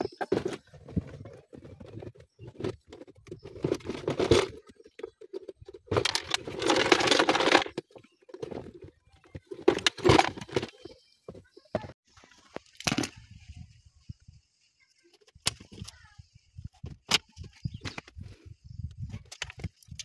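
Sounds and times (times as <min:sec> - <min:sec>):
rustling and scraping: 0:00.0 - 0:13.6.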